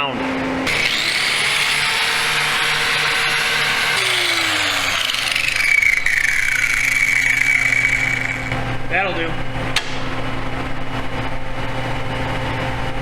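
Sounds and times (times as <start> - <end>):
angle grinder whining: 0.6 - 8.8.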